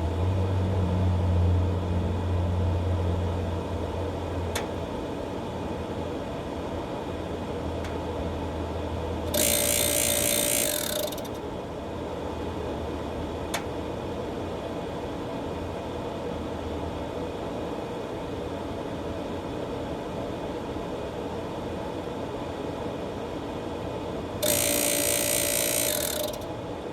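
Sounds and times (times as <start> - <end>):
grill mechanical hum: 0.0 - 26.9
loud harsh auger noise: 9.3 - 11.3, 24.4 - 26.5.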